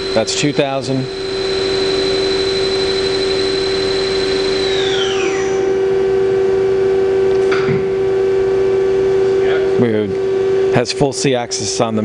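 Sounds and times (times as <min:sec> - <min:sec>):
machine spindle whine: 0:00.0 - 0:08.6
steady machine hum: 0:00.0 - 0:12.0.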